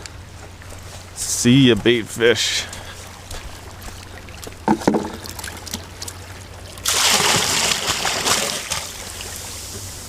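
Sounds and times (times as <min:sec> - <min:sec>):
water pouring and splashing: 0:02.9 - 0:10.0.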